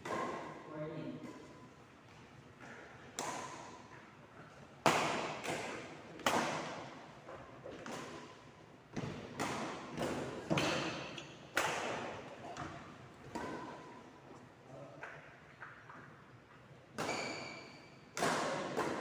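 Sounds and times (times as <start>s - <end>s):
ball hits and bounces echoing: 0.0s - 1.5s, 2.6s - 4.1s, 4.8s - 14.0s, 16.9s - 19.0s.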